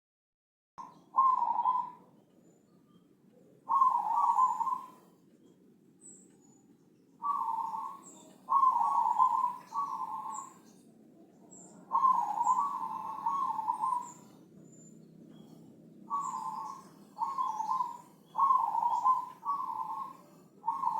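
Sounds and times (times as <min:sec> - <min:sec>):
faint high bird chirps: 0:00.8 - 0:20.9
dove cooing: 0:01.1 - 0:02.1, 0:03.7 - 0:05.1, 0:07.2 - 0:10.6, 0:11.8 - 0:14.4, 0:16.0 - 0:20.9.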